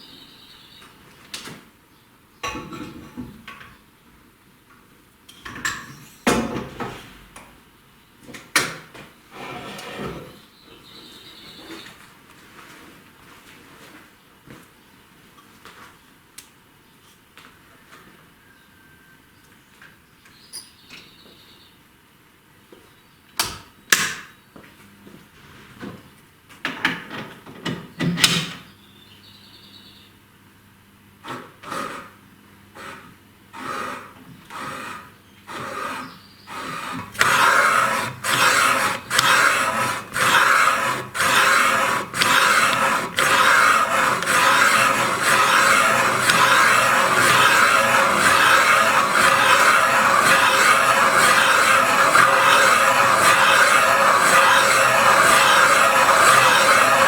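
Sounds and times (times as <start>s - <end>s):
cutter scraping metal: 33.6s - 57.0s.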